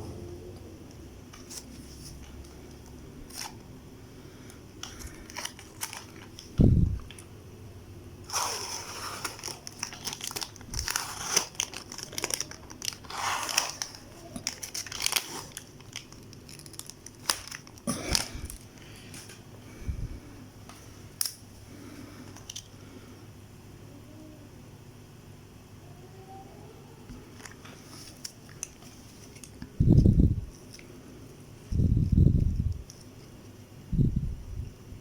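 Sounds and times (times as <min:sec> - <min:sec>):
plastic packaging crinkling: 0:01.3 - 0:03.8, 0:04.4 - 0:07.3, 0:08.2 - 0:19.4, 0:27.3 - 0:29.7.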